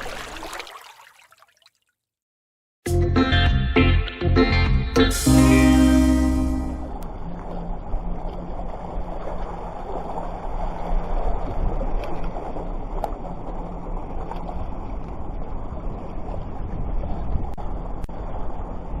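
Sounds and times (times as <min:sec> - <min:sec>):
surf: 0:02.9 - 0:07.0.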